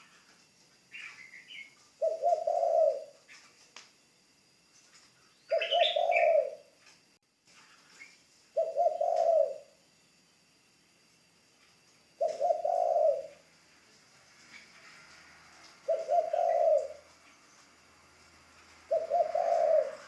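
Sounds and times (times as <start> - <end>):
dove cooing: 0.9 - 3.5, 5.5 - 6.8, 8.5 - 9.8, 12.2 - 13.6, 14.4 - 20.0.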